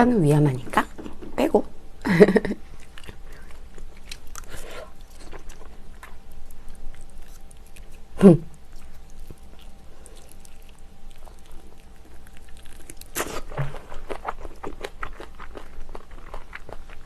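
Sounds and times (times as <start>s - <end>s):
close-miked chewing: 2.6s - 17.0s.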